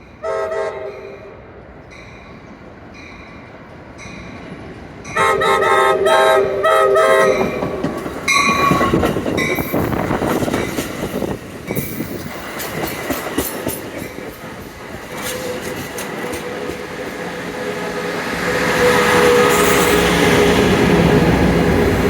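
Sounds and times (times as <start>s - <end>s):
steady train whine: 0.0s - 22.0s
train wheels clattering on rails: 7.1s - 22.0s.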